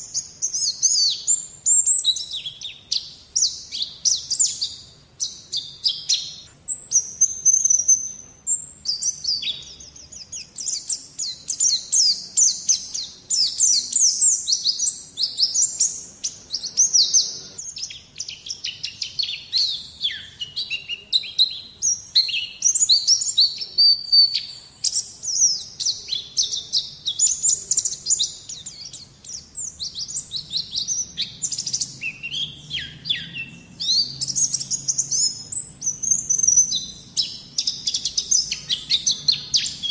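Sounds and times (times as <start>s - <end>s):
bird chirps and twittering trills: 0.0s - 39.9s.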